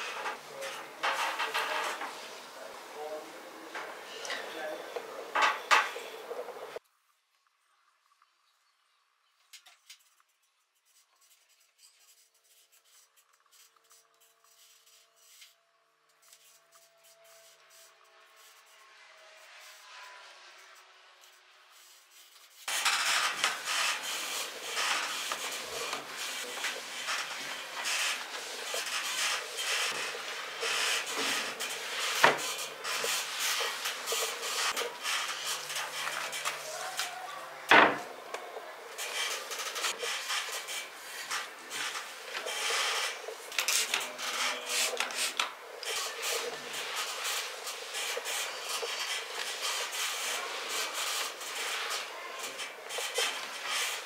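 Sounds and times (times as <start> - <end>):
sponge scrubbing hard surface: 39.0 - 54.0.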